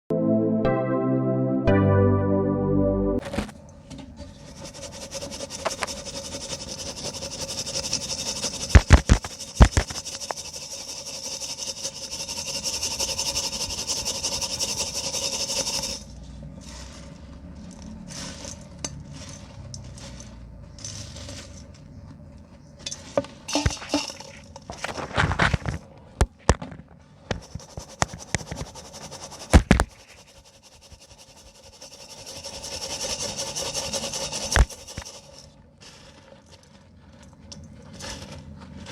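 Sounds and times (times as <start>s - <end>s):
cement scraped by hand: 4.2s - 12.4s.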